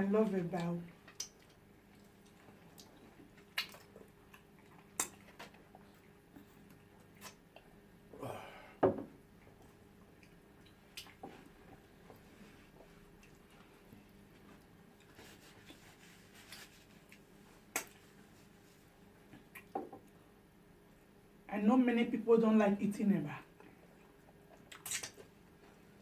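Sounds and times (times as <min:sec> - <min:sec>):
squishy eating mouth noises: 0:01.0 - 0:07.6, 0:24.4 - 0:25.4.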